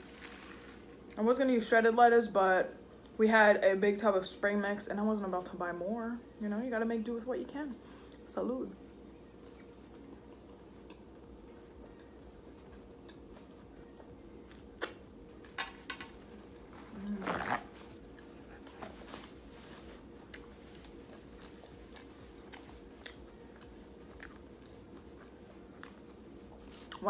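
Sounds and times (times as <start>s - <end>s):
low room hum: 0.0s - 27.0s
biting and chewing taco: 9.3s - 27.0s.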